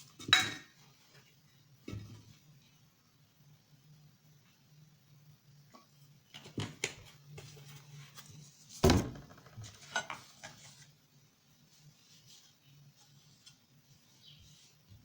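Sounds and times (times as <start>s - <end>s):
dishes and utensils clinking: 0.2s - 0.8s.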